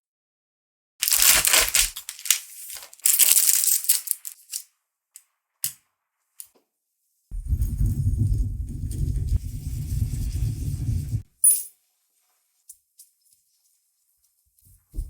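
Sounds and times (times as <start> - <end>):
snack packaging crinkling and tearing: 1.0 - 4.7.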